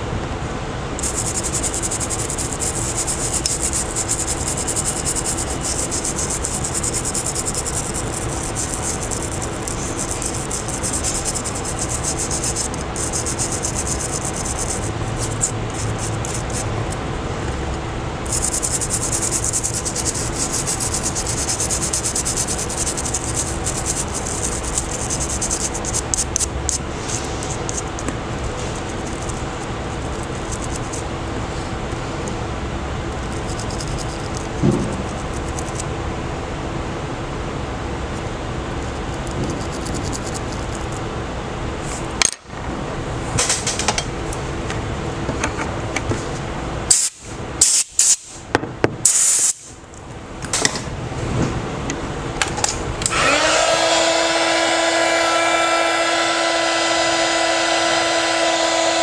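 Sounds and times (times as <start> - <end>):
steady low hum: 0.0 - 59.0
scratchy rubbing noise: 1.0 - 16.7, 18.2 - 31.0, 33.2 - 35.8, 39.4 - 41.0.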